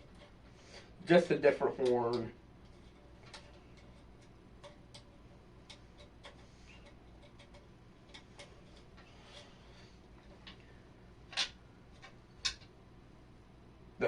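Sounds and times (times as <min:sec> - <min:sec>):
faint clicks and ticks: 0:01.7 - 0:10.7.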